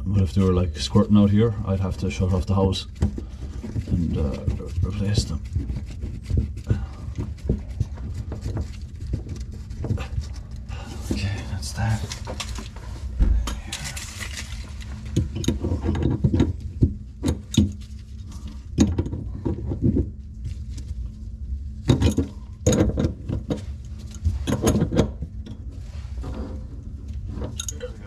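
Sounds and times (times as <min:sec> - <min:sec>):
tools and metal fittings clattering: 0:21.9 - 0:25.6, 0:27.3 - 0:28.0.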